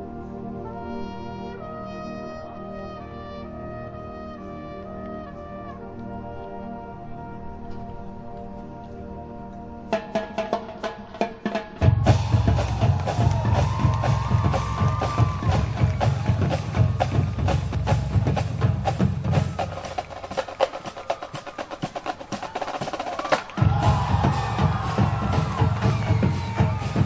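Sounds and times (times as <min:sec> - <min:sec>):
horns playing: 0:00.0 - 0:10.0, 0:11.8 - 0:27.0
bass drums: 0:11.8 - 0:20.6, 0:23.5 - 0:27.0.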